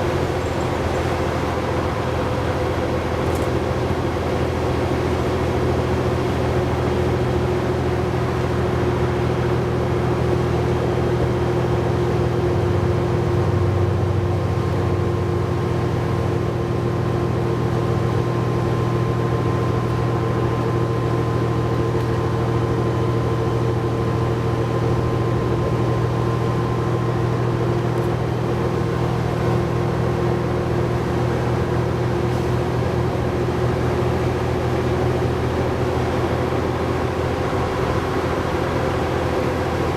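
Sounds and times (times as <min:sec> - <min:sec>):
bus diesel engine: 0:00.0 - 0:39.9
road noise: 0:00.0 - 0:39.9.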